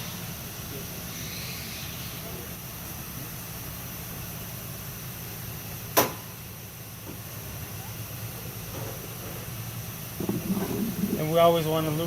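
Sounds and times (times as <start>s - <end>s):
steady low hum: 10.1s - 11.7s.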